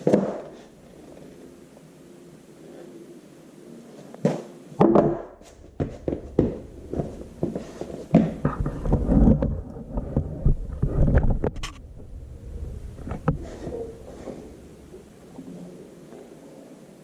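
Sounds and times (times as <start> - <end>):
dull metal thumps: 4.8 - 12.2.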